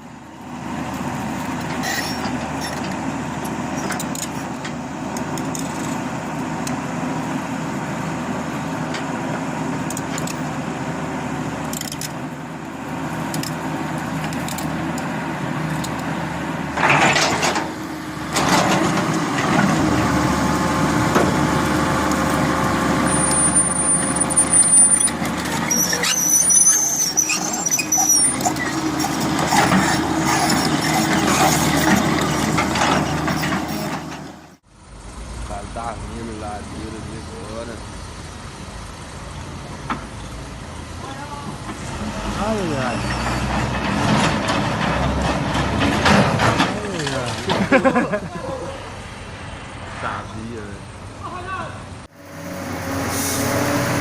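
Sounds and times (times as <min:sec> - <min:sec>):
truck engine running: 0:00.0 - 0:42.9
high-pitched squeals: 0:01.8 - 0:02.9, 0:22.9 - 0:34.6, 0:52.1 - 0:54.0.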